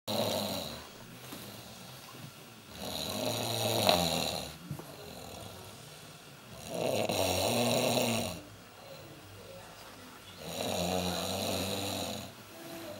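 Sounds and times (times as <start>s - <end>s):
person snoring: 0.1s - 0.8s, 2.7s - 5.7s, 6.5s - 8.4s, 10.4s - 12.9s
quiet breathing: 0.2s - 7.0s, 7.6s - 12.9s.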